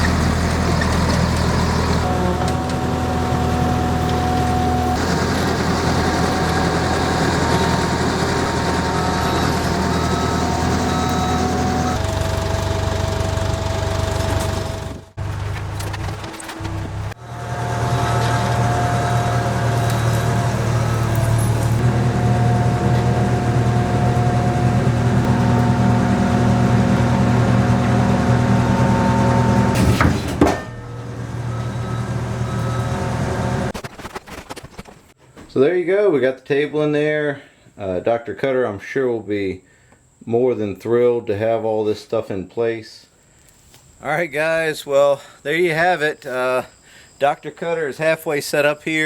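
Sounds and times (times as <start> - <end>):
diesel engine running: 0.0 - 33.8
steady whine: 0.0 - 34.0.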